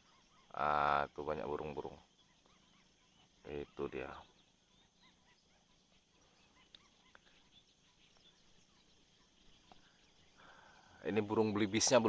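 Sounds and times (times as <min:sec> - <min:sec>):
distant bird chirps: 0:00.0 - 0:12.0
faint clicks: 0:06.6 - 0:07.4.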